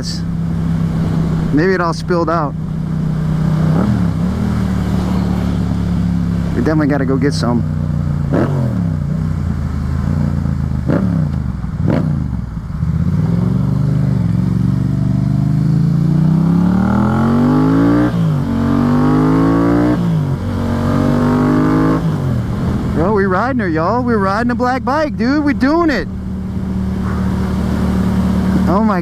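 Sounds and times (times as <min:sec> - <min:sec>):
motorcycle engine accelerating: 0:00.0 - 0:29.0.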